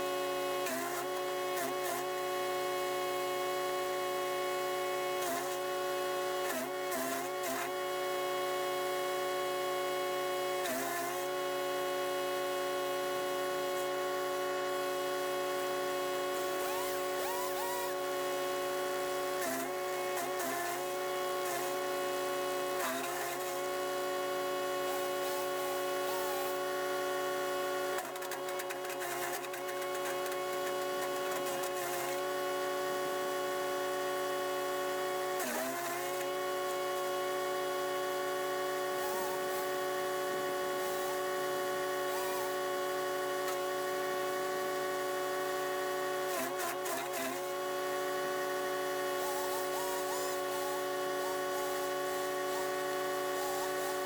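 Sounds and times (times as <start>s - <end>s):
wood chipper engine running: 12.1s - 54.0s.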